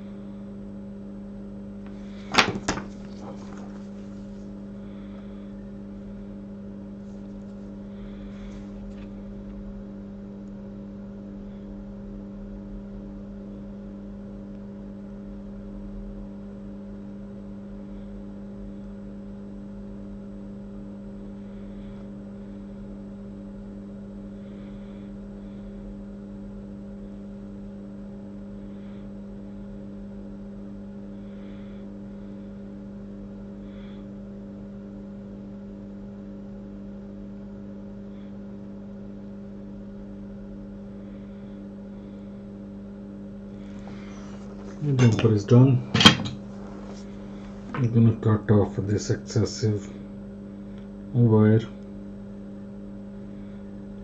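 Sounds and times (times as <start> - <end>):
electrical hum: 0.0 - 54.0
tool clattering on bench: 44.9 - 45.3, 45.9 - 46.4.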